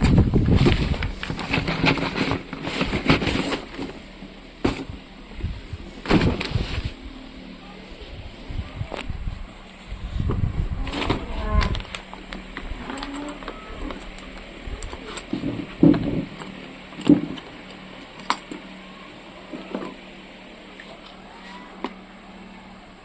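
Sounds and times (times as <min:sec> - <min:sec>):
packaging rustling: 0:00.6 - 0:04.0.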